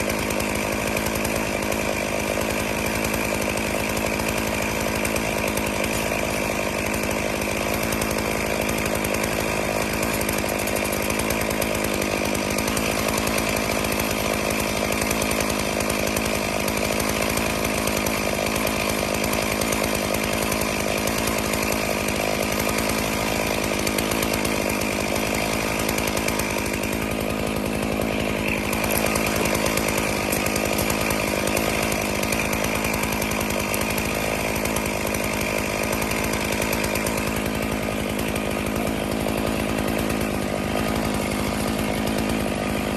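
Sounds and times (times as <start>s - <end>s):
chainsaw cutting log: 0.0s - 42.9s.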